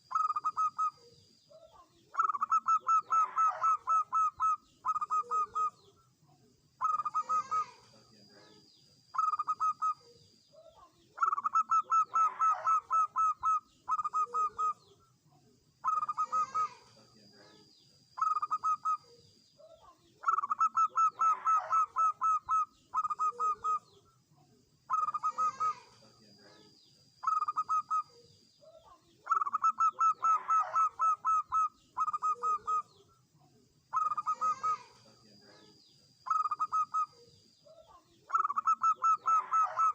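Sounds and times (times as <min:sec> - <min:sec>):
dove cooing in staccato notes: 0:01.7 - 0:05.8, 0:06.8 - 0:07.8, 0:11.2 - 0:14.9, 0:15.8 - 0:16.8, 0:19.8 - 0:23.9, 0:24.9 - 0:25.9, 0:27.2 - 0:28.1, 0:29.2 - 0:33.0, 0:33.9 - 0:34.9, 0:36.2 - 0:37.2, 0:37.8 - 0:39.9.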